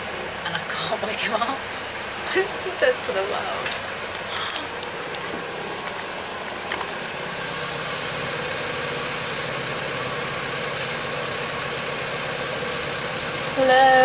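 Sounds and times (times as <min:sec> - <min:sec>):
boat engine humming: 0:00.0 - 0:14.0.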